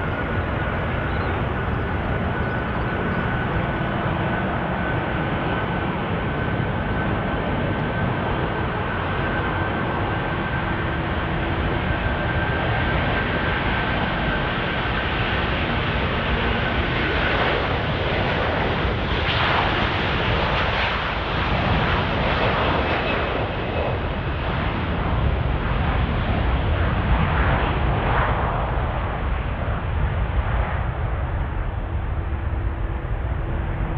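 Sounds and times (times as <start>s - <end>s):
jet engines roaring: 0.0s - 33.9s.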